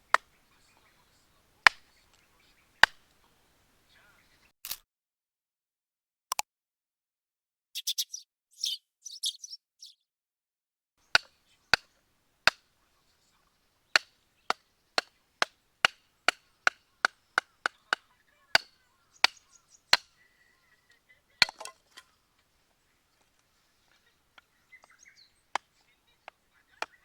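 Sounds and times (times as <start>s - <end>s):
baton knocking on hatchet: 21.4s - 22.1s.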